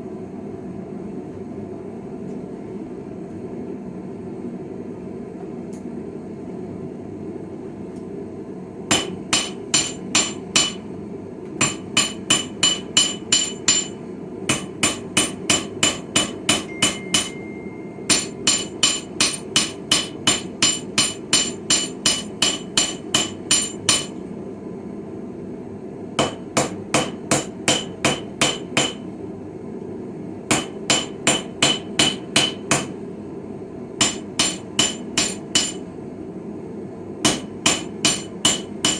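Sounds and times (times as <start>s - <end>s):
hammer striking steel on anvil: 8.9s - 10.9s, 11.6s - 24.2s, 26.2s - 29.1s, 30.5s - 33.0s, 34.0s - 35.9s, 37.2s - 38.9s.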